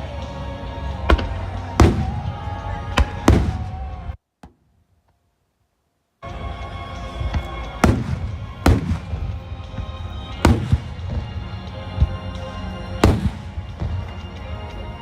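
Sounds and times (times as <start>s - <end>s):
music over loudspeakers: 6.2s - 15.0s
firework shells booming: 7.2s - 12.2s, 13.0s - 14.2s.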